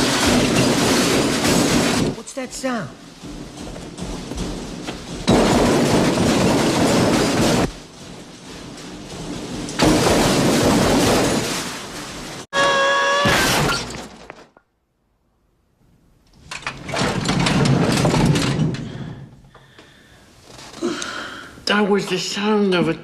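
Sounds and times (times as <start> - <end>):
metal tool chest crashing down stairs: 0.0 - 14.6, 16.7 - 19.5.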